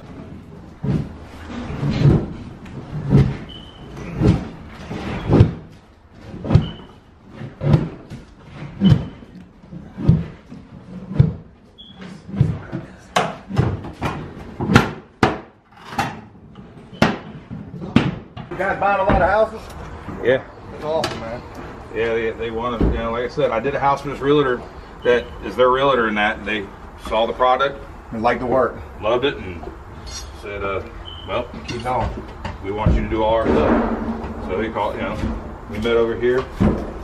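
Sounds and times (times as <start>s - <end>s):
demolition knocks and thuds: 0.0s - 6.9s, 7.5s - 11.6s, 17.0s - 20.2s, 22.7s - 23.4s, 31.6s - 37.0s.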